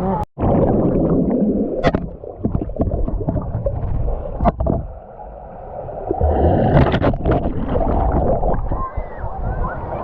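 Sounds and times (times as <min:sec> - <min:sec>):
water rushing and splashing: 0:00.6 - 0:10.0.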